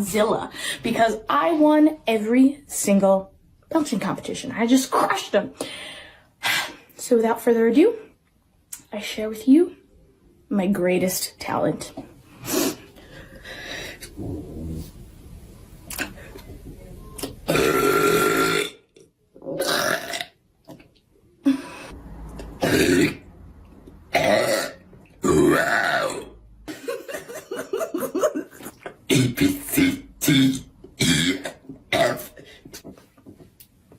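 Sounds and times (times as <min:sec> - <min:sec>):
woman belching: 0:17.4 - 0:20.4, 0:22.6 - 0:23.2, 0:24.1 - 0:26.4, 0:29.0 - 0:32.4.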